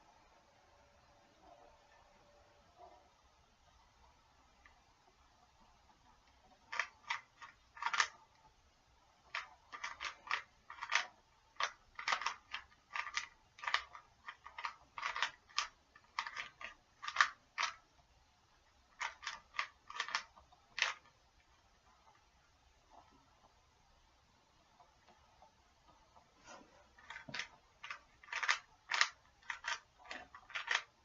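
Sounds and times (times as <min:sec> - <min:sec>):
puzzle cube faces clicking: 0:06.5 - 0:08.3, 0:09.2 - 0:17.8, 0:18.9 - 0:21.2, 0:27.0 - 0:31.0.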